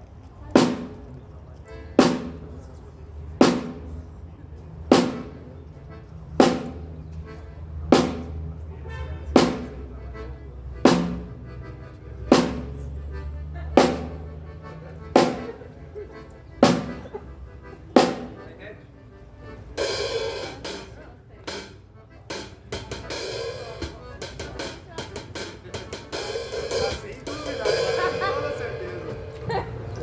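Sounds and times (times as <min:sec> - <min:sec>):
snare drum hits: 0:10.9 - 0:11.3, 0:22.4 - 0:29.6.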